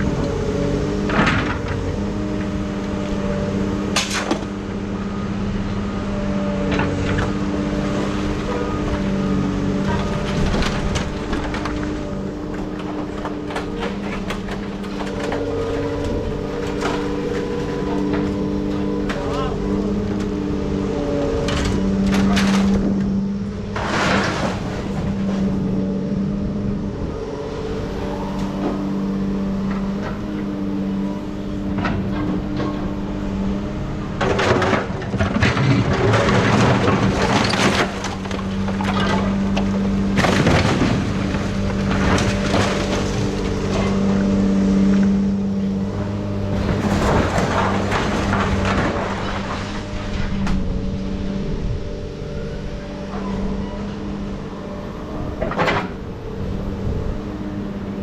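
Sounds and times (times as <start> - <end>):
engine hum: 0.0 - 58.0
metal clanks and rattles: 9.8 - 20.4, 45.9 - 50.7.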